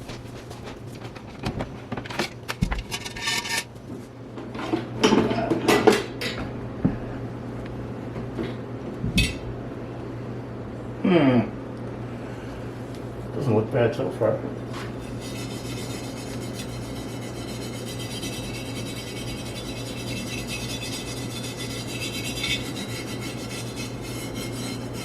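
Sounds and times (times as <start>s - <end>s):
scraping: 2.2s - 3.7s.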